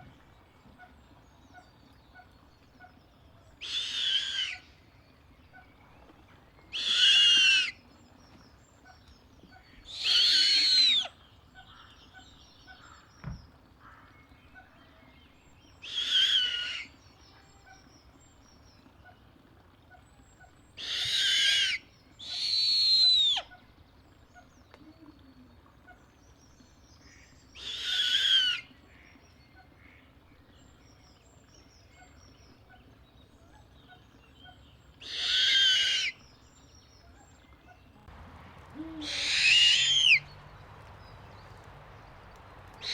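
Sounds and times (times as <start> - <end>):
owl calling: 3.6 - 4.7, 6.7 - 7.8, 9.8 - 11.9, 15.8 - 16.9, 20.8 - 23.6, 27.1 - 28.7, 34.5 - 36.2, 38.7 - 40.5, 42.0 - 42.9.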